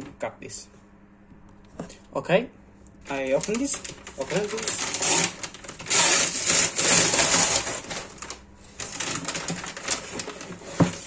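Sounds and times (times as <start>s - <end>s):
packaging rustling and crinkling: 3.1s - 11.0s.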